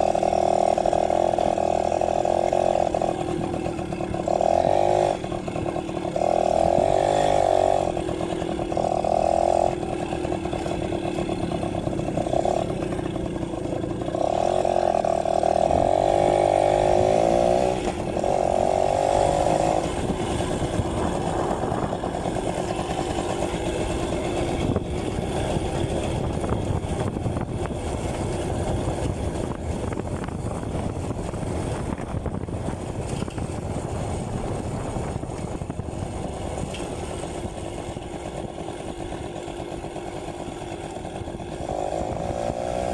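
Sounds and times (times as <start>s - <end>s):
two-stroke engine revving: 0.0s - 42.9s.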